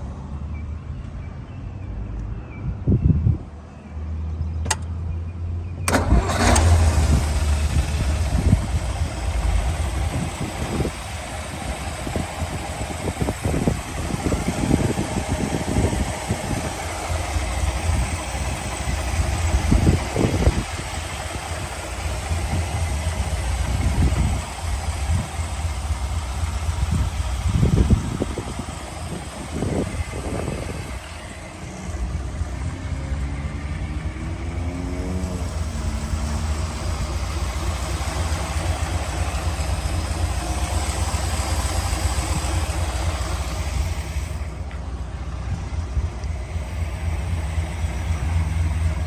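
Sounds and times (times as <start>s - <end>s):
click: 4.6s - 4.9s
car engine idling: 5.8s - 49.0s.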